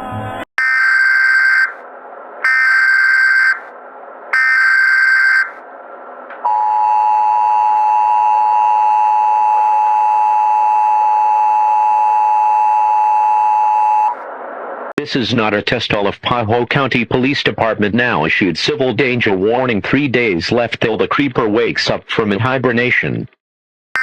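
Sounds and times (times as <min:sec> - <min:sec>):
harsh two-tone attention signal: 0:00.6 - 0:01.8, 0:02.5 - 0:03.6, 0:04.4 - 0:05.6
screechy digital data tones: 0:00.6 - 0:01.8, 0:02.4 - 0:03.7, 0:04.4 - 0:05.6.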